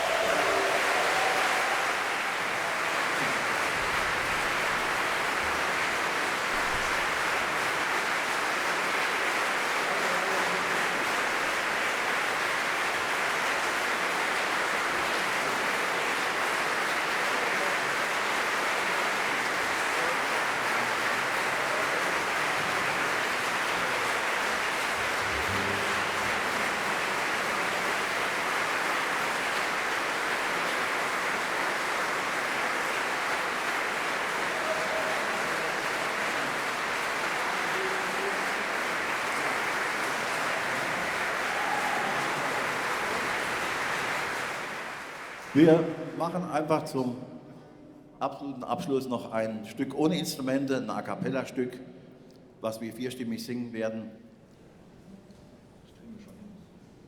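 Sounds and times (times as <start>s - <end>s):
audience applause: 0.0s - 46.3s.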